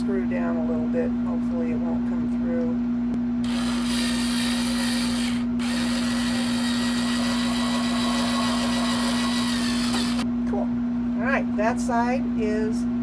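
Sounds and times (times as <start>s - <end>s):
steady hum: 0.0s - 13.0s
power drill driving screw into wood: 3.4s - 10.2s.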